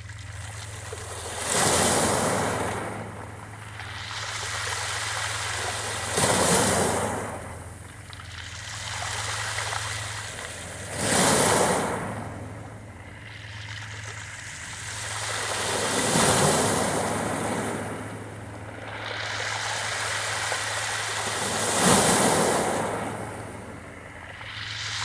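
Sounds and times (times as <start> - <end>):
sea waves washing onto beach: 0.0 - 25.0
steady low hum: 11.9 - 25.0.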